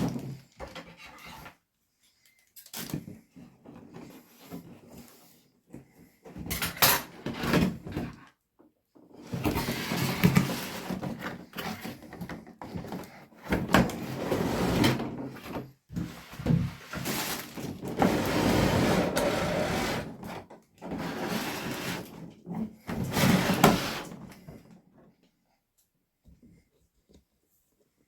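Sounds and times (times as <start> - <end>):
packaging rustling and scraping: 9.4 - 24.4.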